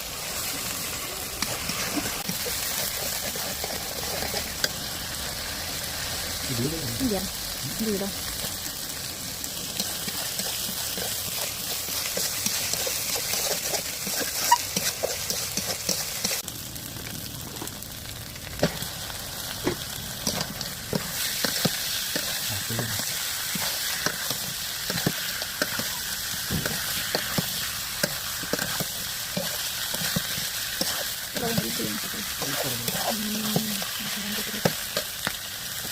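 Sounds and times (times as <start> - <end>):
food sizzling in hot oil: 0.0 - 35.9
metal spoon scraping a pan: 9.8 - 16.4, 20.2 - 35.2.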